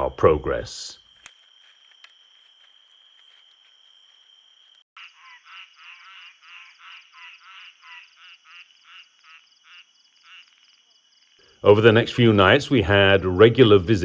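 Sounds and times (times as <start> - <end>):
frogs croaking: 0.0 - 14.0
high insect trill: 0.0 - 14.0.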